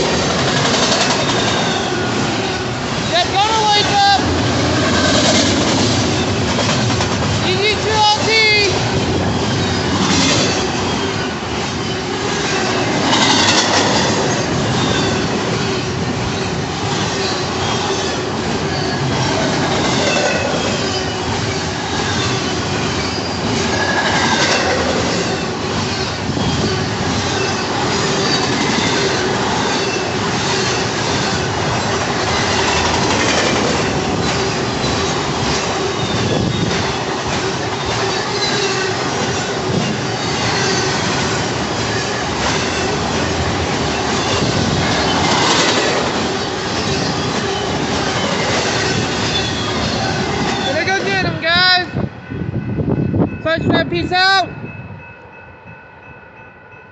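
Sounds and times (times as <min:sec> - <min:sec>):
train wheel squeal: 0:00.0 - 0:03.2, 0:09.0 - 0:50.9
wheels clacking over rail joints: 0:00.0 - 0:51.1
freight train cars rolling past: 0:00.0 - 0:56.9.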